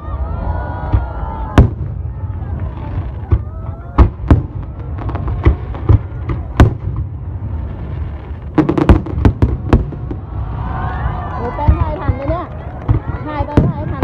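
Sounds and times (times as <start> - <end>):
fireworks bangs: 0.5 - 14.0.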